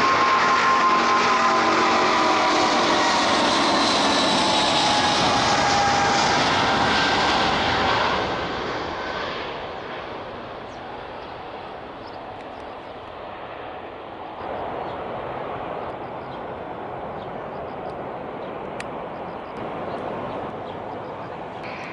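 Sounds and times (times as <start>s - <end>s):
jet engines roaring: 0.0s - 21.9s.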